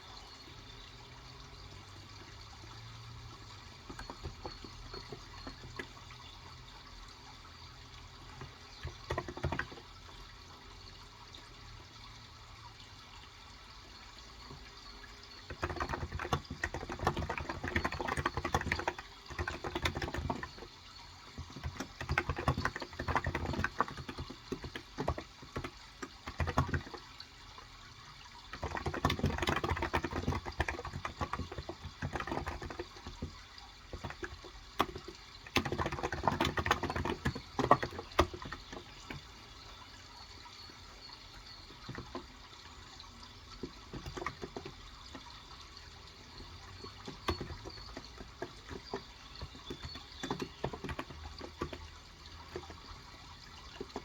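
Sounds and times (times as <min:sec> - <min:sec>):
running water: 0:00.0 - 0:54.0
typing on keyboard: 0:03.3 - 0:06.4, 0:08.2 - 0:10.1, 0:14.4 - 0:27.2, 0:28.4 - 0:39.9, 0:40.5 - 0:54.0.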